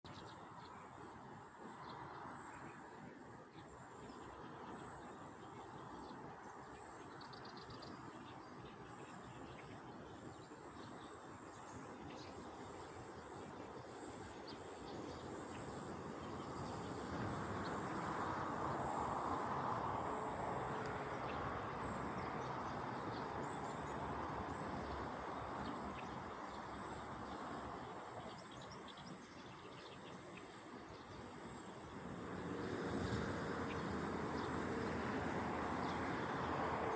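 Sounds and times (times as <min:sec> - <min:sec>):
small birds chirping: 0:03.6 - 0:18.1, 0:20.6 - 0:32.0
passing traffic: 0:12.4 - 0:36.9.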